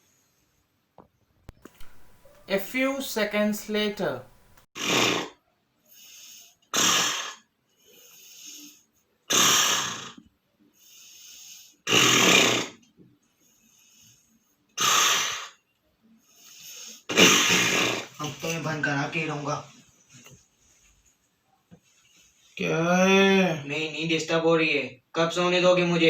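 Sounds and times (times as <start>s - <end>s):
person snoring loudly: 4.8s - 5.4s, 6.7s - 7.4s, 9.3s - 10.2s, 11.9s - 12.8s, 17.1s - 18.2s.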